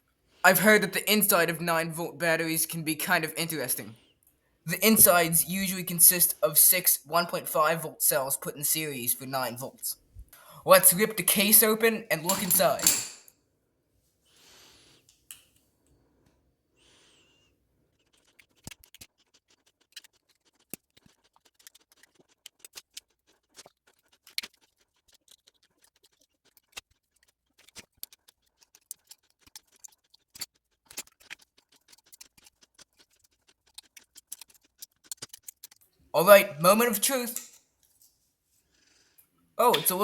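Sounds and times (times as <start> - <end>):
tool clicking on metal: 12.2 - 13.2.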